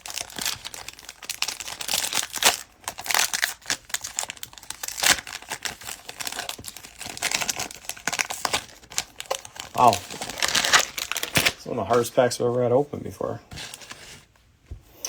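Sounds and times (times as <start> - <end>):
foil wrapper crinkling and tearing: 0.0 - 12.3.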